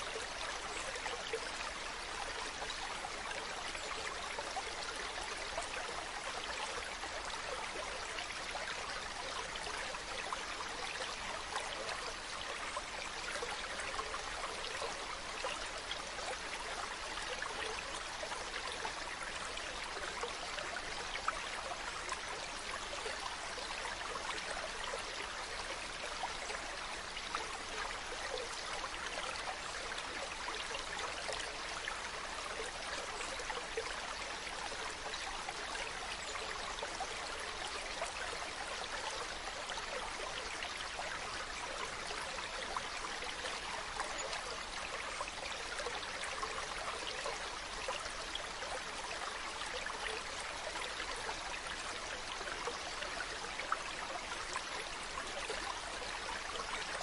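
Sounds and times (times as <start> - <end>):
stream running over rocks: 0.0 - 57.0.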